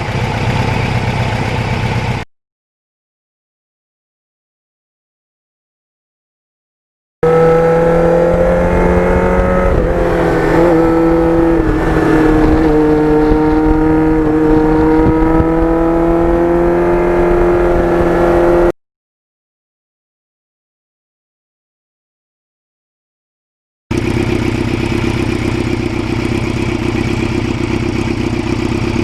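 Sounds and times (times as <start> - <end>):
motorcycle engine running: 0.0 - 2.2, 7.2 - 18.7, 23.9 - 29.0.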